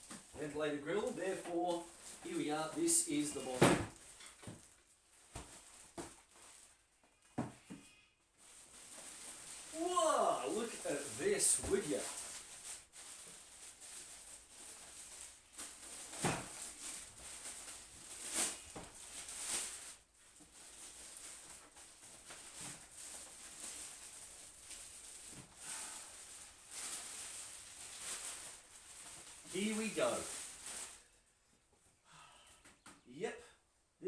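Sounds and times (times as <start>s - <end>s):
packing material rustling: 0.0s - 7.0s, 8.3s - 31.2s
sharp knocks and crinkles: 0.0s - 9.8s, 10.6s - 25.6s.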